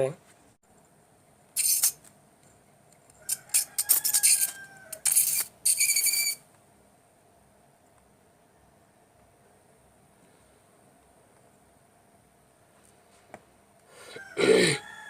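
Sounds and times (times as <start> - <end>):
arc welder crackling sparks: 1.6 - 2.1
thin whistling tone: 5.7 - 6.4.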